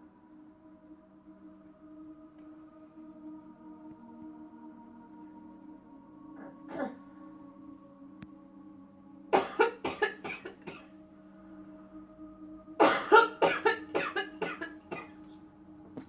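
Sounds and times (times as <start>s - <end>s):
soft ambient music: 0.0s - 16.0s
person coughing: 6.7s - 7.0s, 9.4s - 10.8s, 12.8s - 15.1s.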